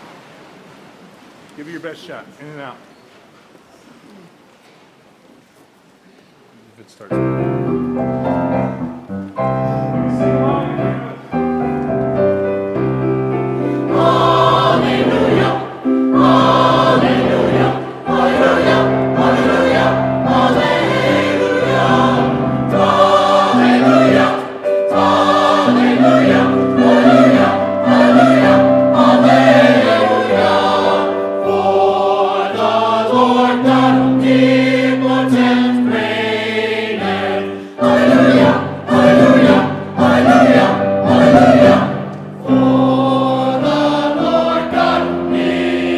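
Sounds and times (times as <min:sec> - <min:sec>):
choir singing a carol: 0:10.0 - 0:45.9.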